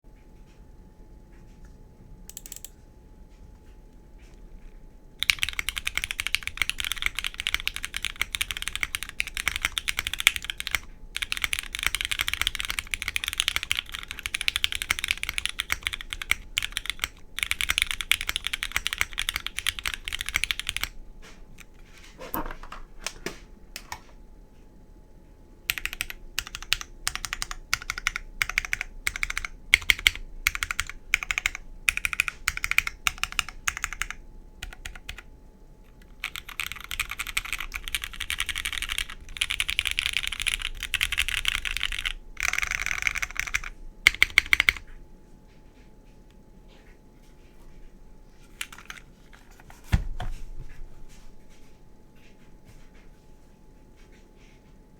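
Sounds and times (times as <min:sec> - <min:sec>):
mechanical keyboard typing: 0:02.3 - 0:02.7, 0:05.2 - 0:21.0, 0:25.7 - 0:35.3, 0:35.9 - 0:44.8, 0:48.6 - 0:49.7.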